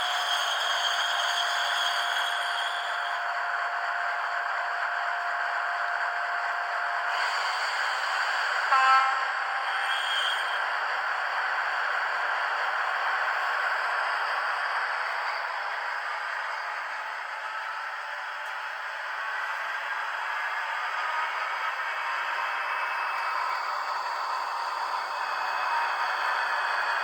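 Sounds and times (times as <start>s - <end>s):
model locomotive running sound: 0.0s - 27.0s
locomotive horn toot: 8.7s - 9.5s.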